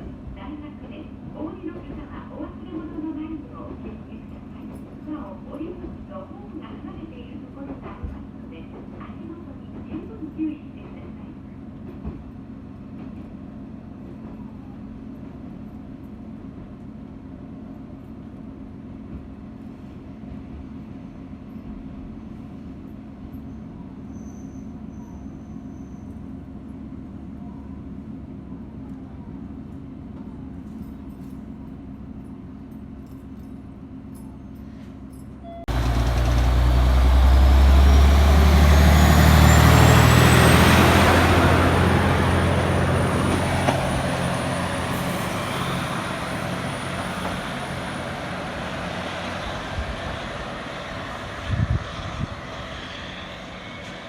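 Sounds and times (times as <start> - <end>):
diesel railcar accelerating: 33.7 - 54.0.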